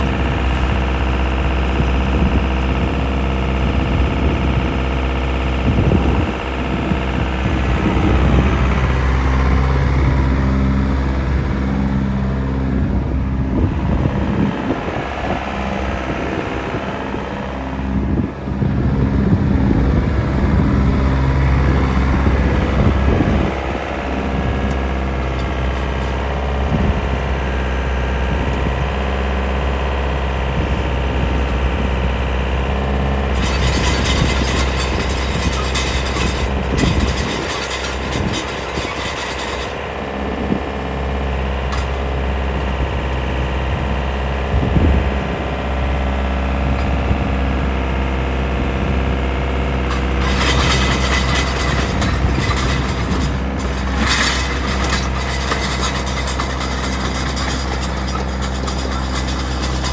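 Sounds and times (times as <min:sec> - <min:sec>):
excavator diesel engine running: 0:00.0 - 0:59.9.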